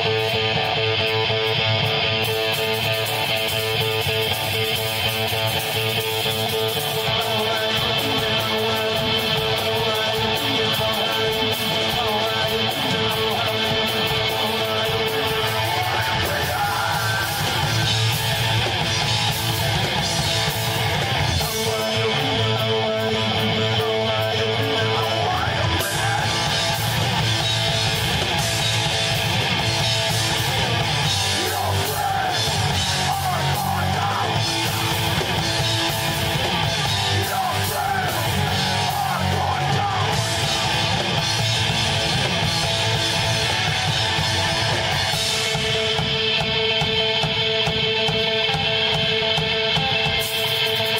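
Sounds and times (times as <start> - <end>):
rock band playing live: 0.0 - 50.9.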